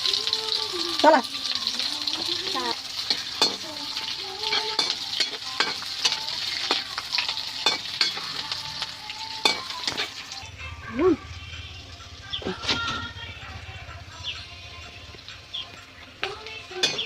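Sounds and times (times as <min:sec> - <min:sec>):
chicken sizzling in a pan: 0:00.0 - 0:10.4
spoon scraping and knocking pan: 0:03.0 - 0:03.7, 0:04.5 - 0:08.5.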